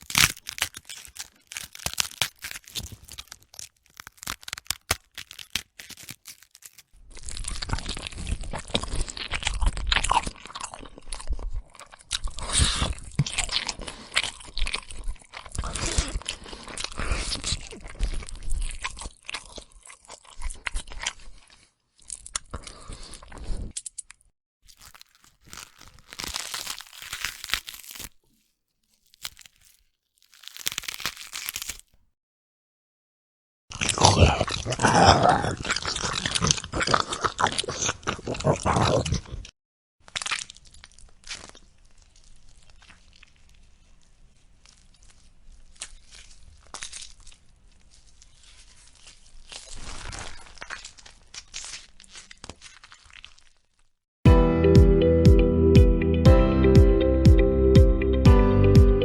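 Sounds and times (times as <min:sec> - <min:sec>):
sharp cracks and snaps: 0:00.0 - 0:08.0, 0:23.8 - 0:32.0
wet crunching and chewing: 0:00.0 - 0:32.1, 0:33.7 - 0:54.0.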